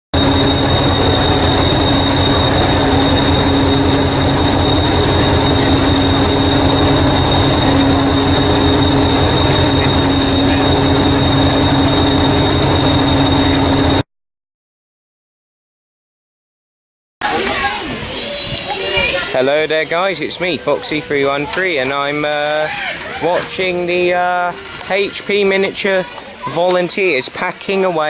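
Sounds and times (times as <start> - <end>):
train rumbling: 0.1 - 14.0, 17.3 - 26.5
high squeal: 0.2 - 14.0, 17.2 - 25.6.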